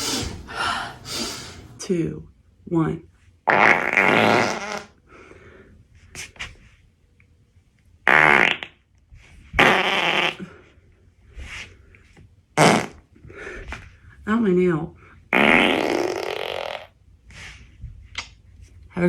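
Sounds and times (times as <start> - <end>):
woman farting: 3.5 - 5.0, 8.1 - 8.8, 9.6 - 10.6, 12.6 - 13.1, 15.3 - 17.0.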